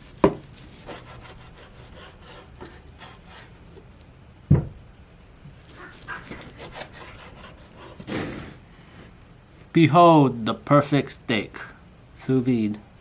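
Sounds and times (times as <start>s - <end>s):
knife scraping cutting board: 0.0s - 3.6s, 5.5s - 8.6s.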